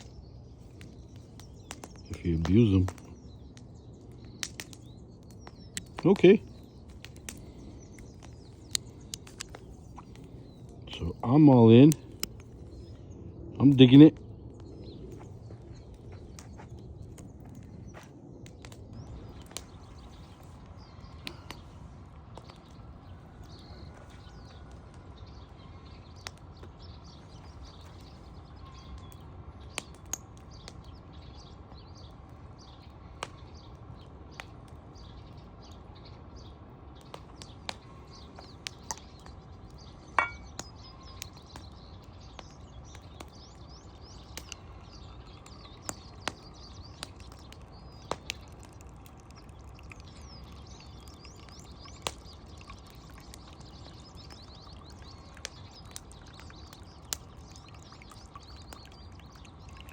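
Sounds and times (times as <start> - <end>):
birds chirping: 0.0 - 59.9
ringing clink: 40.2 - 40.5.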